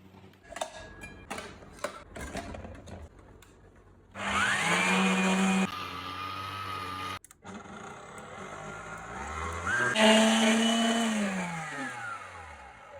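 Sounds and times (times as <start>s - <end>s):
kitchen machine motor whining: 4.2s - 12.9s.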